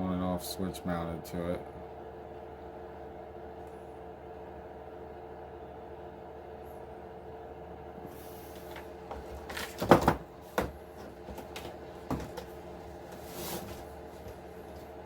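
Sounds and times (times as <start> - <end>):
steady low hum: 0.0 - 15.0
plastic toy truck knocks and clatters: 9.4 - 12.5
short scrape: 13.2 - 13.9.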